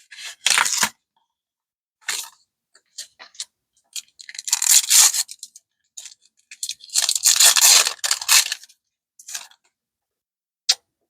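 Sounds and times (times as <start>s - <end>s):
plastic wrapping crinkling and tearing: 4.2s - 8.7s.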